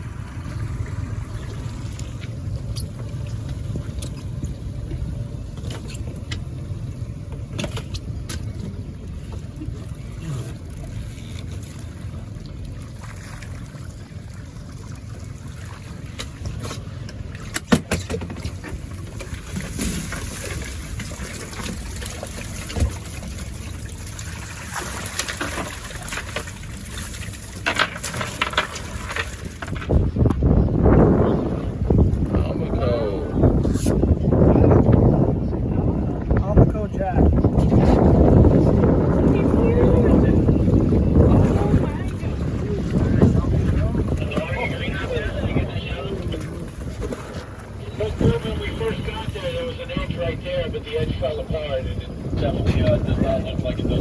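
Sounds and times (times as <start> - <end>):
boat engine rumble: 0.0 - 54.0.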